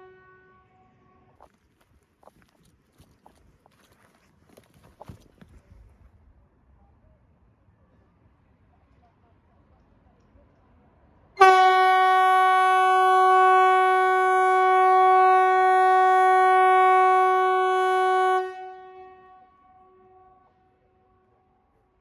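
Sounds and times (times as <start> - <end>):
siren steady blast: 11.4 - 19.5.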